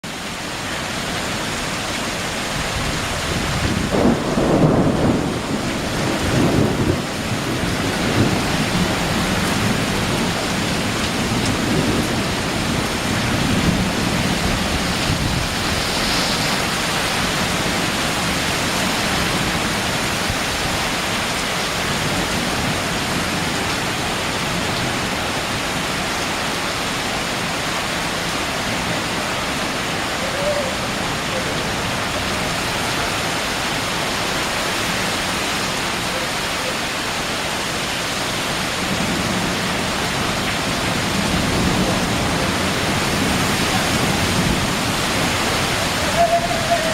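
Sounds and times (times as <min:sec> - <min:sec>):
heavy rain pouring: 0:00.0 - 0:46.9
wind: 0:00.0 - 0:46.9
rolling thunder rumbles: 0:02.6 - 0:18.4.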